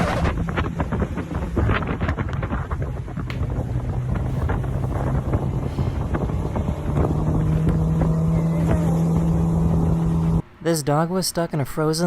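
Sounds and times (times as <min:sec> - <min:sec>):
aircraft engine drone: 0:00.0 - 0:10.4
wind rushing over airframe: 0:00.0 - 0:10.4.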